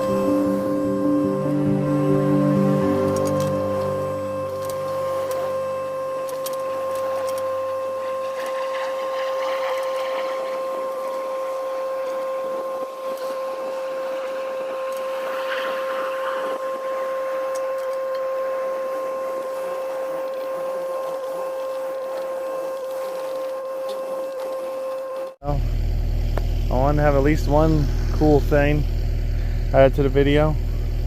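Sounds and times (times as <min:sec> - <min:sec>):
excavator running: 0:00.0 - 0:18.2
high-pitched whine: 0:00.0 - 0:31.0.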